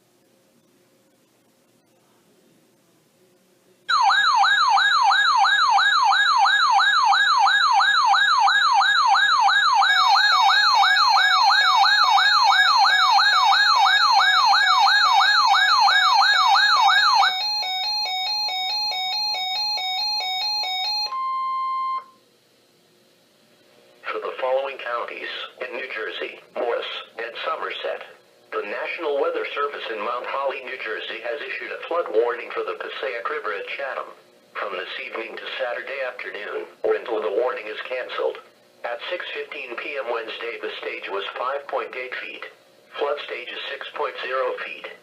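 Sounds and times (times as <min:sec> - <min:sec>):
electronic siren alert tone: 0:03.9 - 0:22.2.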